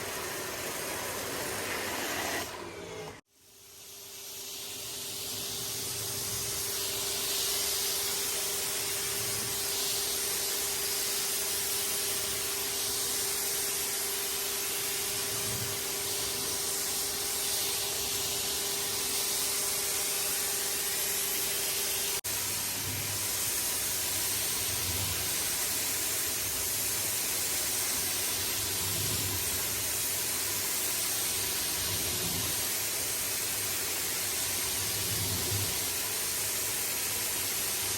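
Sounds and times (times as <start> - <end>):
pressure washer spraying water: 0.0 - 3.2.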